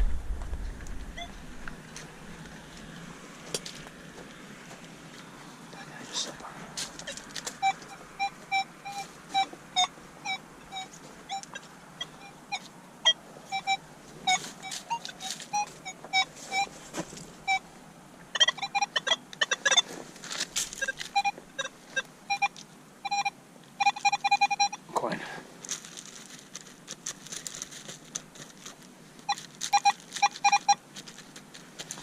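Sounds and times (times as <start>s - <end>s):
metal detector beeping: 1.1s - 1.4s, 7.0s - 16.7s, 17.4s - 17.7s, 18.3s - 19.9s, 20.7s - 24.9s, 29.2s - 30.8s.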